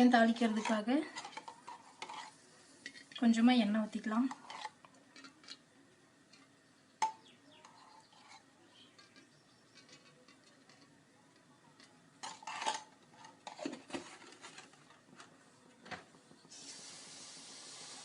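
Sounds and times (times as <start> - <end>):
metal pan and utensils clinking: 0.2 - 3.2, 7.0 - 10.9, 12.2 - 14.8
steady hiss: 16.2 - 18.0.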